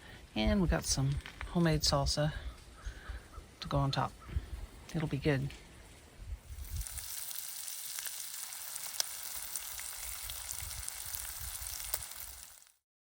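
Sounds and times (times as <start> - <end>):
food sizzling in a frying pan: 6.5 - 12.8.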